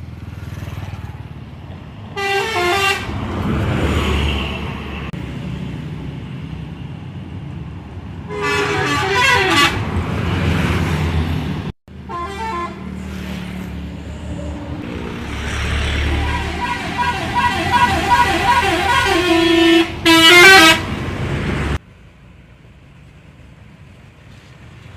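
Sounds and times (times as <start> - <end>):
bus engine running: 0.0 - 24.9
bus horn melodies: 2.2 - 3.1, 8.3 - 9.8, 12.0 - 13.0, 15.8 - 21.0.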